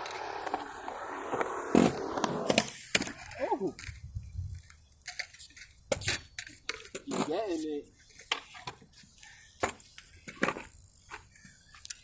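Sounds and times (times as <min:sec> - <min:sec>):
skateboard hitting ground: 0:00.0 - 0:04.0
skateboard wheels rolling on pavement: 0:00.0 - 0:12.0.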